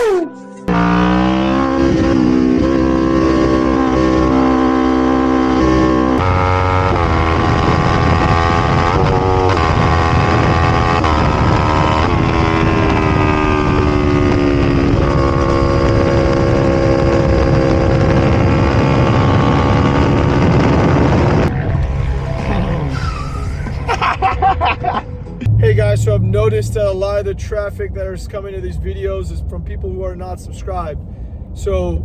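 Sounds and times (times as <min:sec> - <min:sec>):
motorcycle engine running hard: 0:00.7 - 0:22.9.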